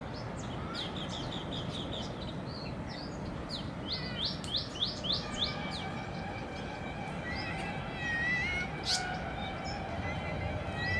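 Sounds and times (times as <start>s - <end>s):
small bird chirping: 8.8s - 9.8s.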